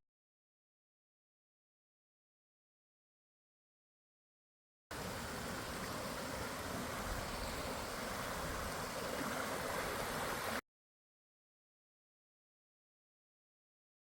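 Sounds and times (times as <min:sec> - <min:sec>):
creek water rushing: 0:04.9 - 0:10.6.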